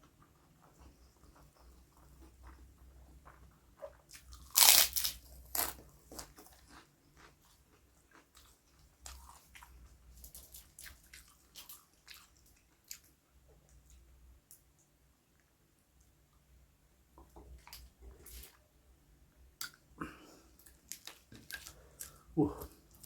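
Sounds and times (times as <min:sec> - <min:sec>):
person crunching food: 0:04.1 - 0:09.7, 0:20.6 - 0:23.0.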